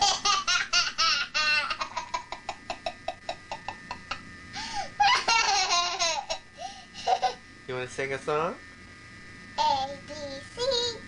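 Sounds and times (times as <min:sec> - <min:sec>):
young child laughing: 0:00.0 - 0:04.2, 0:05.0 - 0:07.4.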